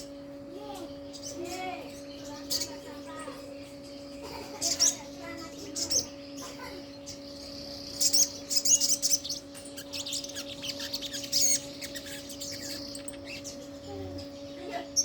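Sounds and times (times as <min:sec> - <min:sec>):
steady low hum: 0:00.0 - 0:15.0
bird high rapid chirps: 0:04.6 - 0:15.0.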